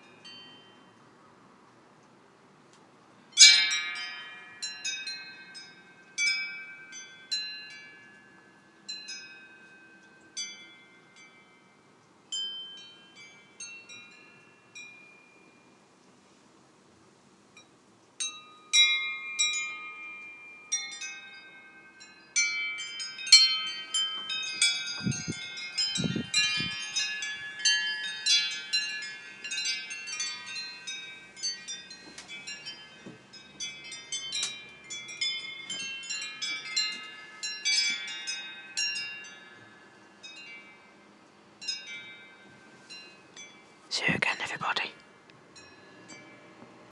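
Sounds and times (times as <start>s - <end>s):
wind chimes ringing: 0.0s - 1.0s, 3.2s - 16.0s, 17.6s - 46.9s.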